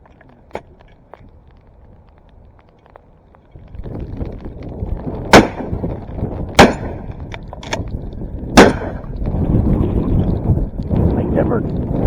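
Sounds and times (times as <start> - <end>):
wind and rain rumble: 0.0 - 12.0
shotgun shots: 5.3 - 5.9, 6.6 - 7.9, 8.6 - 9.1.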